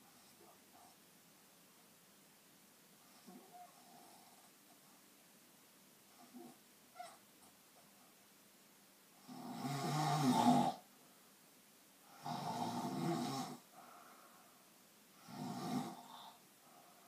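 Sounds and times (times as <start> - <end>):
person snoring: 9.2 - 10.8, 12.1 - 13.6, 15.2 - 16.4.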